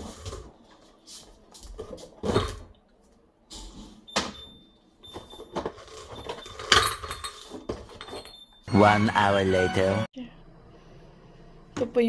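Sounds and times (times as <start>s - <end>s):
groceries knocking and rustling: 5.0s - 8.2s.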